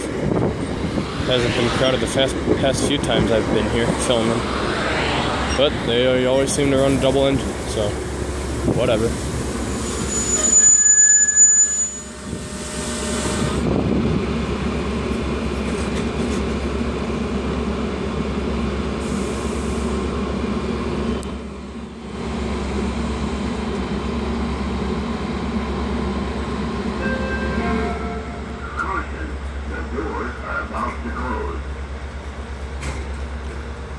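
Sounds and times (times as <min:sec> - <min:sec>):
diesel locomotive engines droning: 0:00.0 - 0:33.9
rail noise: 0:00.0 - 0:33.9
thin high tones ringing: 0:10.0 - 0:12.3.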